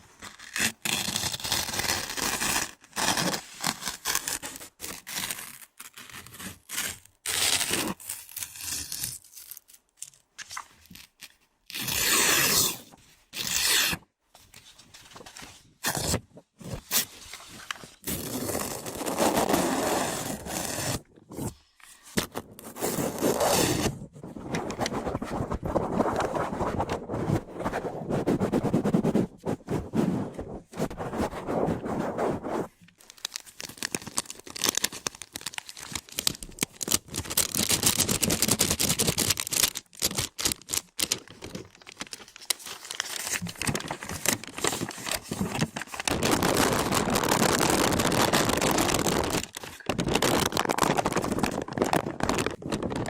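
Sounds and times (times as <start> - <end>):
objects scraped against microphone: 22.4 - 32.9.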